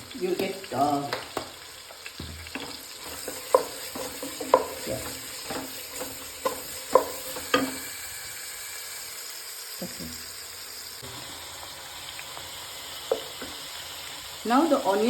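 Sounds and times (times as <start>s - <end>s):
onions sizzling in oil: 0.0s - 15.0s
spoon knocking against pan: 2.2s - 7.8s.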